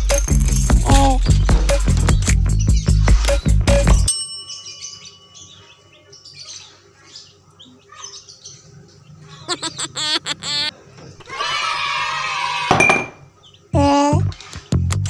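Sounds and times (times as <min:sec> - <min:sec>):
birds chirping: 0:04.7 - 0:11.3.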